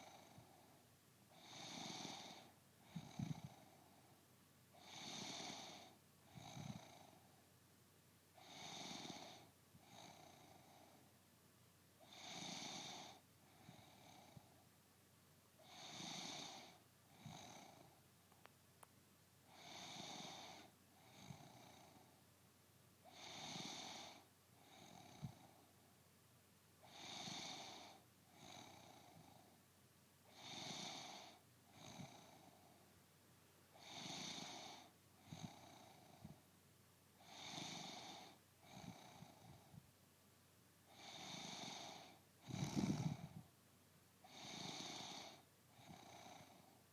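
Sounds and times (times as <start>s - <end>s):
woman snoring: 1.4s - 3.6s, 4.8s - 7.0s, 8.4s - 9.4s, 12.0s - 13.2s, 15.7s - 17.8s, 19.6s - 21.9s, 23.1s - 25.4s, 26.9s - 29.2s, 30.4s - 32.4s, 33.8s - 36.3s, 37.2s - 39.5s, 41.0s - 43.4s, 44.3s - 46.6s.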